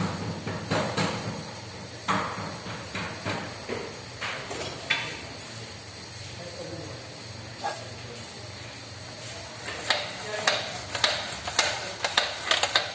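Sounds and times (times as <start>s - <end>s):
knocks and clicks on scooter parts: 9.8s - 12.9s.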